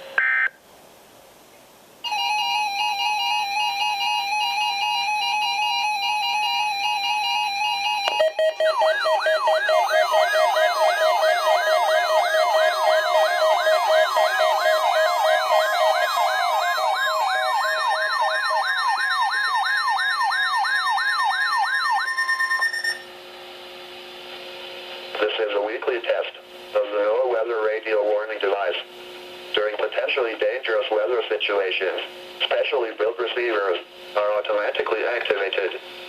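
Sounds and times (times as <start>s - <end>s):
warbling electronic alert siren: 2.1s - 23.1s
steady electronic tone: 6.6s - 23.2s.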